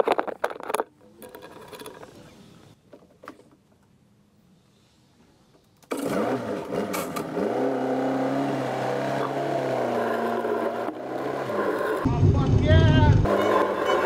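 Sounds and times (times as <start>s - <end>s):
engine starting and running: 5.8s - 14.0s.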